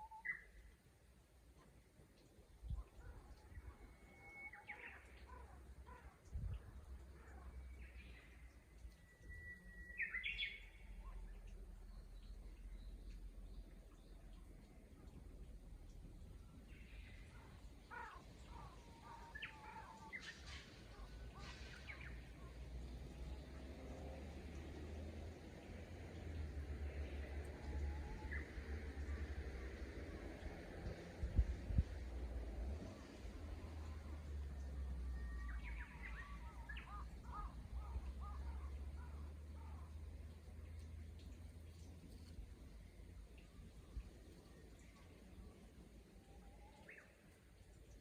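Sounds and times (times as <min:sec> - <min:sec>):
bird singing: 0:00.0 - 0:00.8, 0:02.7 - 0:22.7, 0:34.6 - 0:40.0
bush warbler singing: 0:09.5 - 0:14.2.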